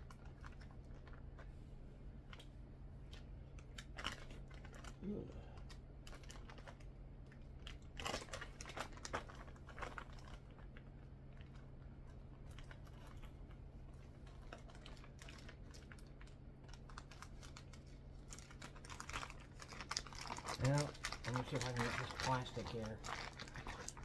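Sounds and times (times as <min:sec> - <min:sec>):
plastic wrapping crinkling: 0:14.6 - 0:24.0.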